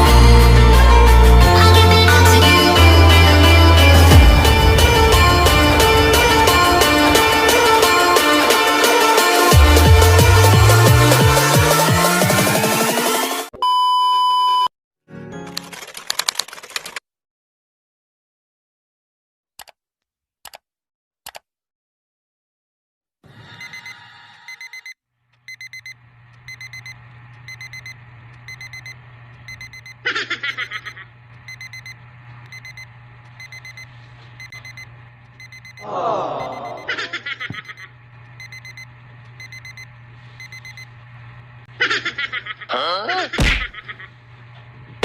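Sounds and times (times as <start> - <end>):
constant low hum: 2.0 - 11.1, 25.4 - 42.7
electronic alarm beeping: 13.6 - 14.7, 23.6 - 30.0, 30.7 - 36.9, 37.6 - 40.9.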